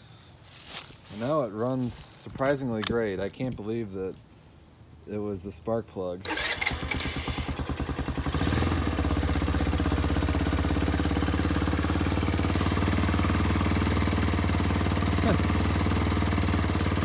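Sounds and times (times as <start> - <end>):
atv engine idling: 6.3 - 17.0.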